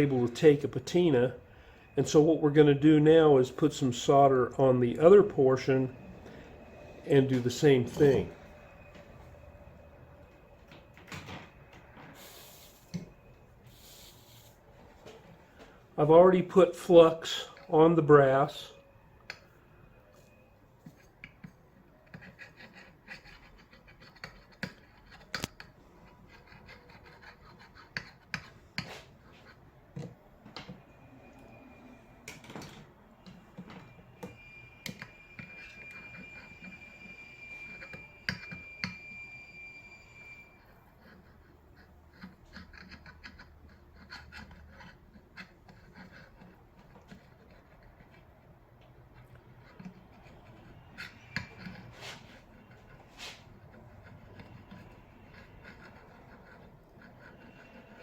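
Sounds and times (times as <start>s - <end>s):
soldering iron scraping: 12.1s - 14.6s, 49.2s - 58.0s.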